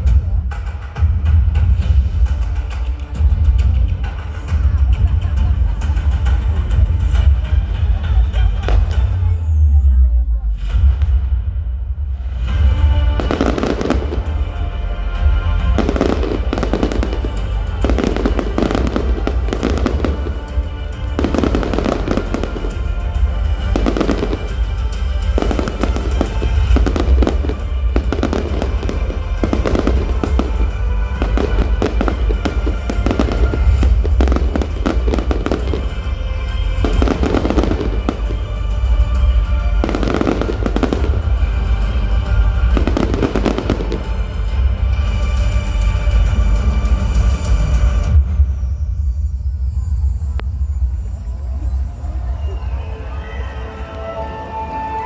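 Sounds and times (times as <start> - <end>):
fireworks bursting: 0.0 - 53.5
music soundtrack: 0.0 - 55.0.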